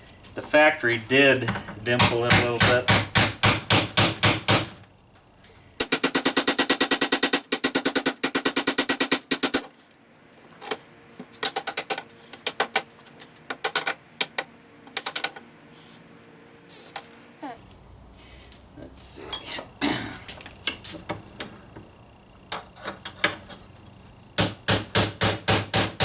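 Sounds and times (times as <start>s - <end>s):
tool striking metal: 24.4s - 26.0s.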